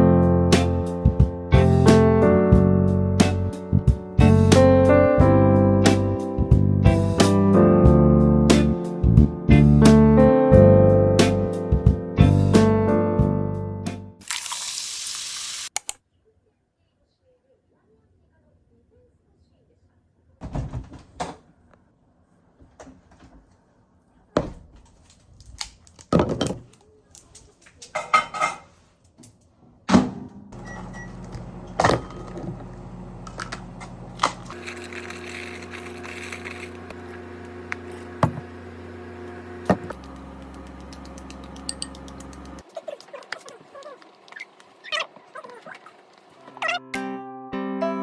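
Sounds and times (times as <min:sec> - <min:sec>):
household knocks and clatters: 0:20.4 - 0:21.4, 0:26.1 - 0:26.7
appliance motor hum: 0:30.6 - 0:46.6.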